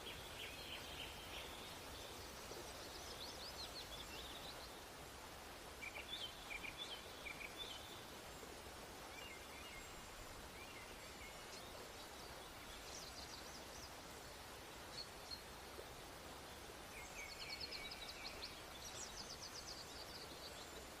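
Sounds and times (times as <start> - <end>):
steady hiss: 0.0 - 21.0.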